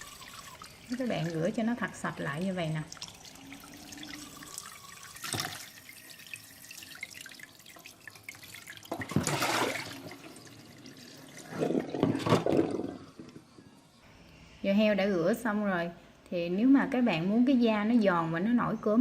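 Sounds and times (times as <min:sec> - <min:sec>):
tap water splashing into sink: 0:05.1 - 0:10.4.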